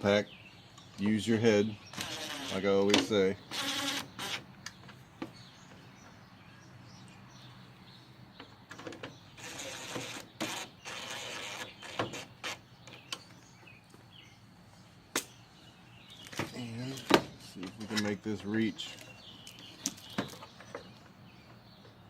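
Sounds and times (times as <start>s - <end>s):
cordless drill driving screws: 1.9s - 2.6s, 3.5s - 4.4s, 9.4s - 12.6s.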